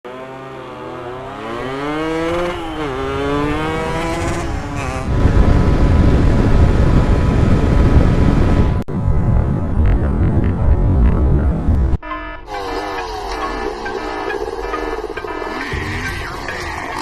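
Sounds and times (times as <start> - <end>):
motorcycle engine accelerating: 0.1 - 12.0
dense low rumbling noise: 5.1 - 17.0.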